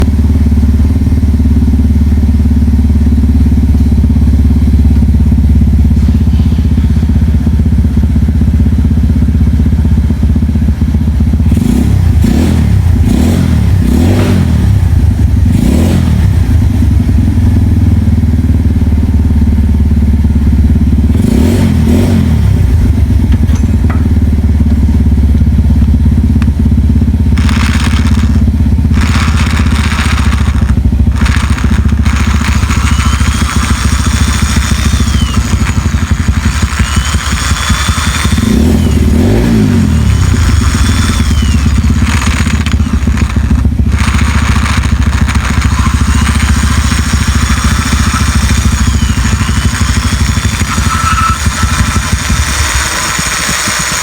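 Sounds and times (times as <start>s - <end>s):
grinding hiss: 27.3s - 54.0s
power tool humming: 27.3s - 54.0s.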